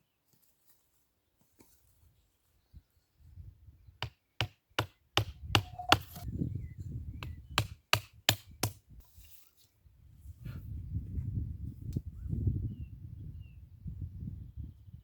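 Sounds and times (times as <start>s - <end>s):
hammer blows on wood: 4.4s - 6.2s.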